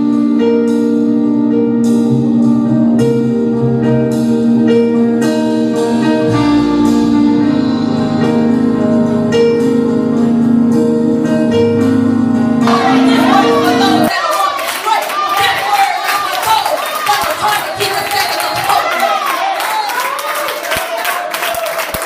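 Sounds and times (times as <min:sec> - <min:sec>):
instrumental worship music: 0:00.0 - 0:14.2.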